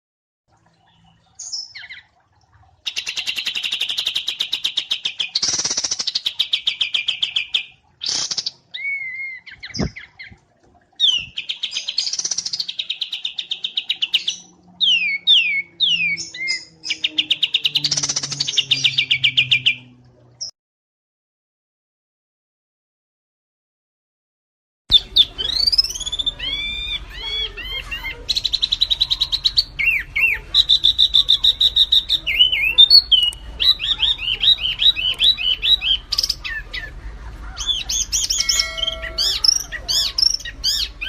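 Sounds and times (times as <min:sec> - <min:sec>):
songbirds chattering trills: 0:02.8 - 0:20.5, 0:24.9 - 0:41.0
quick downslurred bird whistles: 0:08.8 - 0:10.0.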